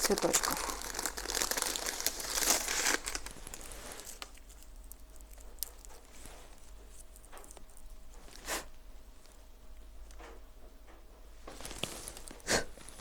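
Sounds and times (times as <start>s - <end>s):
dried flowers crinkling: 0.0s - 8.5s, 11.5s - 13.0s.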